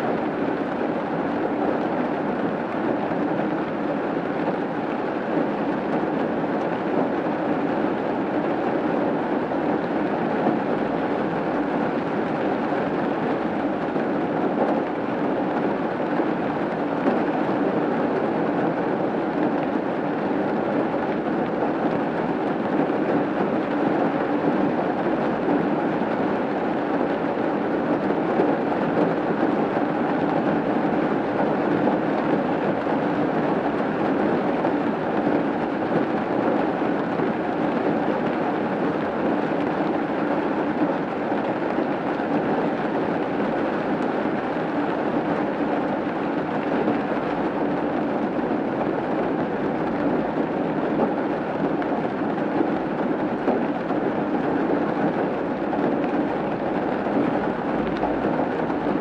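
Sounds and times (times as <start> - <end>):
rain falling on a roof: 0.0 - 59.0.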